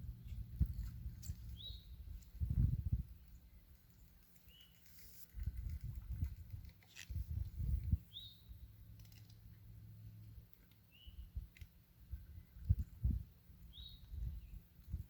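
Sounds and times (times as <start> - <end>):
bird chirping: 0.2 - 5.2, 8.0 - 8.7, 10.8 - 11.4, 12.3 - 14.7
low rumbling on microphone: 1.9 - 3.2, 5.4 - 8.0.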